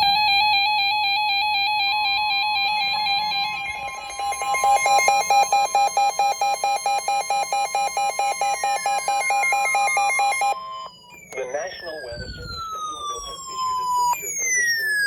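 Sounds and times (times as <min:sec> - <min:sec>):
lower tone beeping: 0:00.0 - 0:15.0
steady high electronic tone: 0:00.0 - 0:15.0
tone gliding down in pitch: 0:00.0 - 0:15.0.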